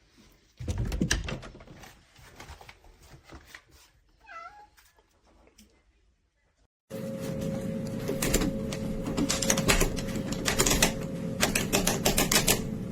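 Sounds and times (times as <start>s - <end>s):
cat meow: 4.2s - 4.8s.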